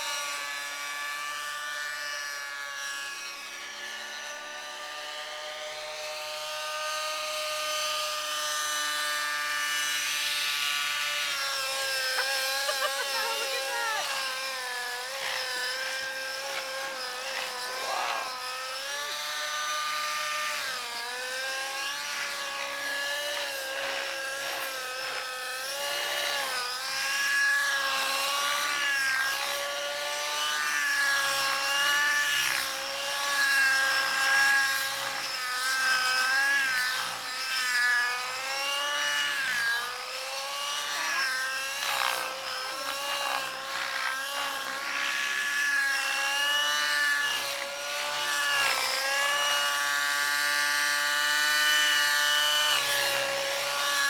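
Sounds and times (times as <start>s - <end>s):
model helicopter engine whine: 0.0s - 54.0s.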